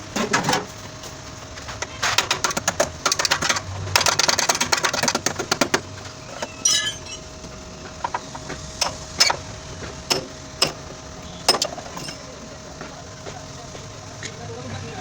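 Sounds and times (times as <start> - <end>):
metallic ring: 6.6 - 7.3, 11.5 - 12.2.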